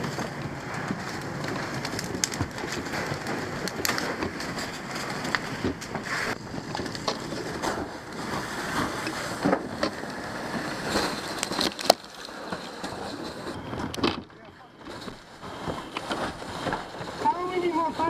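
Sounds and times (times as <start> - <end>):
gear and hose rustling: 0.0 - 18.0.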